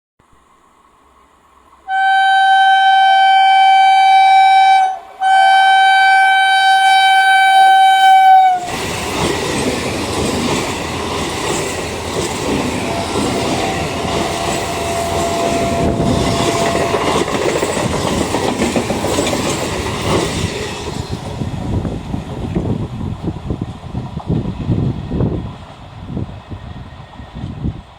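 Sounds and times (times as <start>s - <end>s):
train horn blasts: 1.9s - 8.8s, 12.7s - 17.4s
train wheels clattering over rails: 8.6s - 27.9s.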